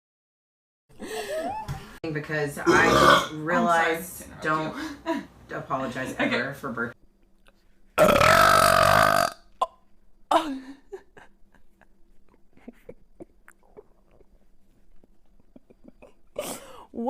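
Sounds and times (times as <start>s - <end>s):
woman burping: 2.6s - 3.4s, 8.0s - 10.5s.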